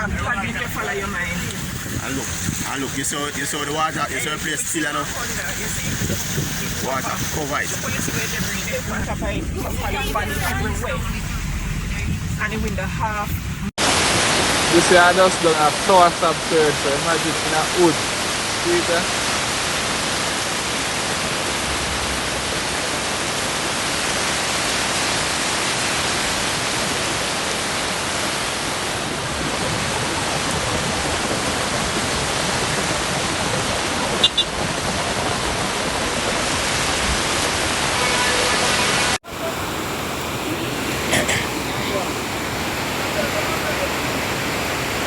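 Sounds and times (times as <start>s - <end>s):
dull rushing: 0.0s - 13.7s
loud rushing water: 0.0s - 45.0s.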